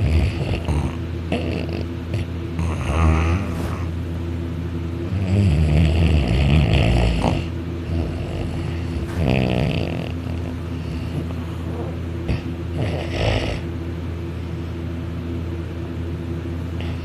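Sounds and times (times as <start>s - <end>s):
boy snoring loudly: 0.0s - 3.9s, 5.1s - 11.3s, 12.3s - 13.6s
steady low hum: 0.0s - 17.0s.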